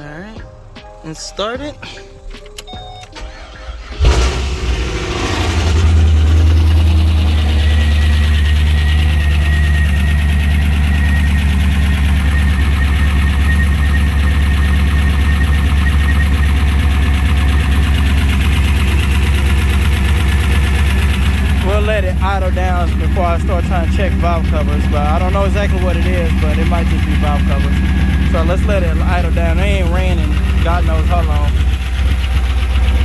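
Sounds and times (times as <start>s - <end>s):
car engine starting and idling: 2.2s - 33.0s
ticking valve chatter: 7.4s - 33.0s.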